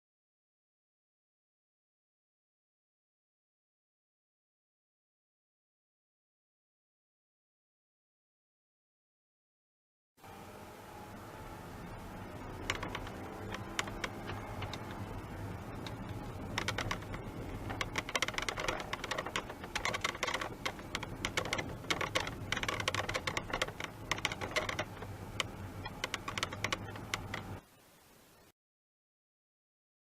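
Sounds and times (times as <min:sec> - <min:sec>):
car driving drone: 0:10.2 - 0:27.6
roof clicking and creaking: 0:11.8 - 0:27.6.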